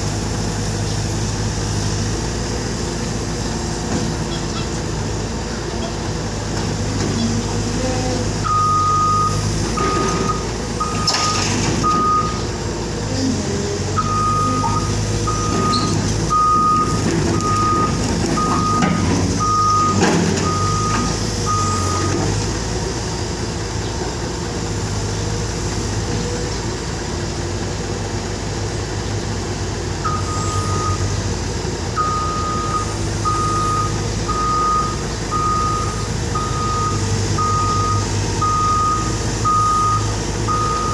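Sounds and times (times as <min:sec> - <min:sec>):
diesel engine running: 0:00.0 - 0:40.9
reversing alarm beeps: 0:08.4 - 0:12.4, 0:14.0 - 0:22.1, 0:30.0 - 0:31.0, 0:32.0 - 0:40.9.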